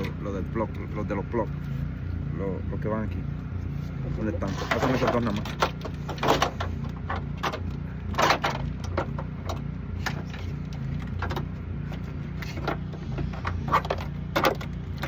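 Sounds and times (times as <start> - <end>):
cable plugs clicking and rattling: 4.2 - 15.0.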